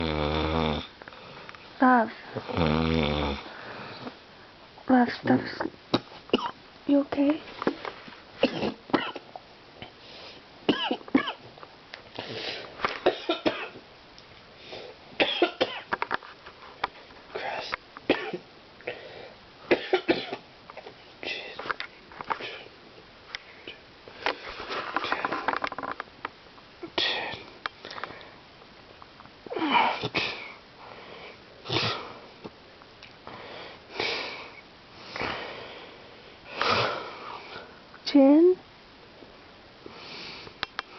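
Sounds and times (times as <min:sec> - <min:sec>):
man snoring: 0:00.0 - 0:00.9, 0:02.4 - 0:03.5
man coughing in his sleep: 0:06.4 - 0:06.6, 0:08.4 - 0:09.3, 0:10.7 - 0:11.4, 0:13.0 - 0:13.8, 0:15.2 - 0:15.9, 0:17.4 - 0:18.4, 0:19.7 - 0:20.4.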